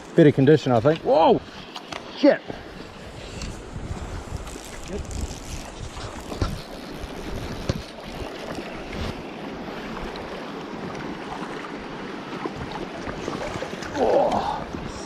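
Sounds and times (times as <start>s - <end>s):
wind buffeting microphone: 2.5s - 10.2s.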